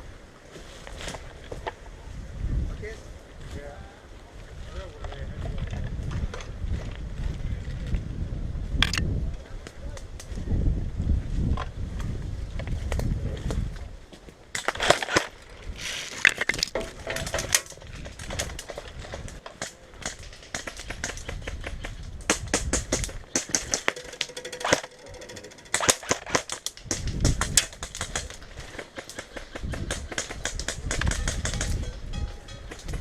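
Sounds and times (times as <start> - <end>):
airsoft guns firing: 19.5 - 25.1, 25.7 - 31.8.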